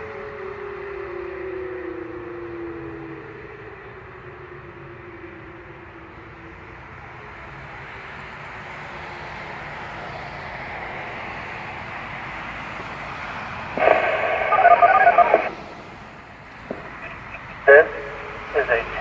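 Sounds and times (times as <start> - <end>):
outdoor noise: 0.0 - 19.0
electronic siren alert tone: 13.8 - 15.6.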